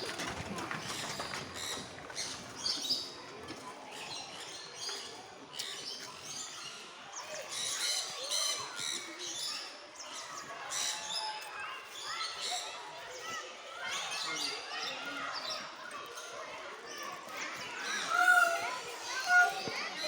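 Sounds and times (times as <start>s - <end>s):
birds chirping: 17.7s - 20.0s.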